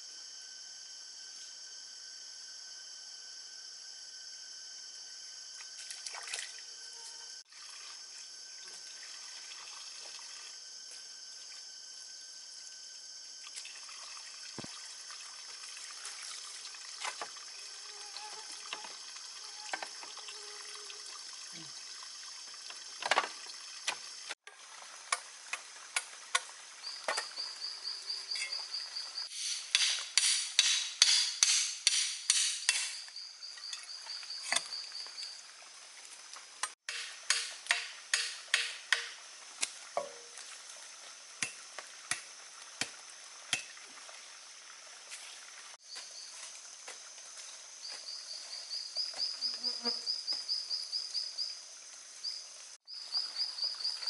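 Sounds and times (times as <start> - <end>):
insect chorus: 0.0 - 54.0.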